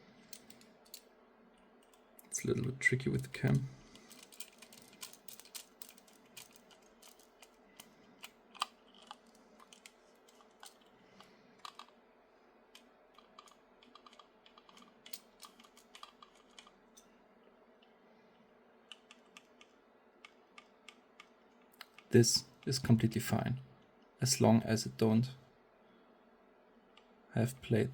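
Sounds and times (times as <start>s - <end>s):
plastic parts clicking and tapping: 3.4s - 12.0s, 12.7s - 16.8s, 18.9s - 22.1s.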